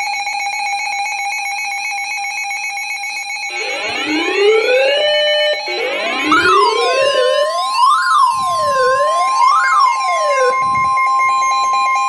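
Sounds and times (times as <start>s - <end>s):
steady buzzing alert tone: 3.5s - 10.6s
rising siren-like sweeps: 3.5s - 10.9s.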